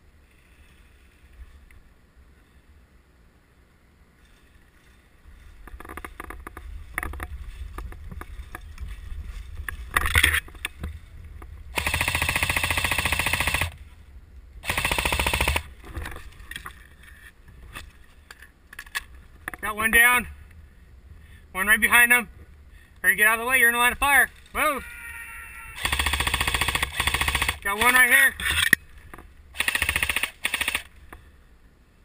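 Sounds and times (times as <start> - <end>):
airsoft gun full-auto bursts: 11.8 - 13.8, 14.6 - 15.7, 25.8 - 28.1, 29.6 - 31.0.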